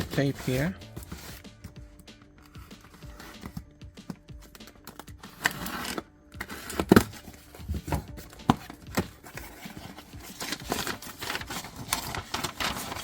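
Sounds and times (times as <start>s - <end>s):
cardboard flaps scraping and rustling: 5.4s - 13.0s.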